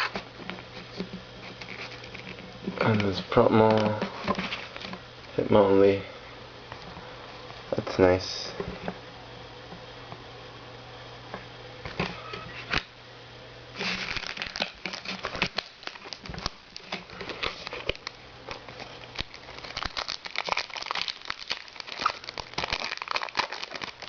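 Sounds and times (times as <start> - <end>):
crinkling plastic and foil packaging: 0.0 - 5.0, 13.8 - 24.0.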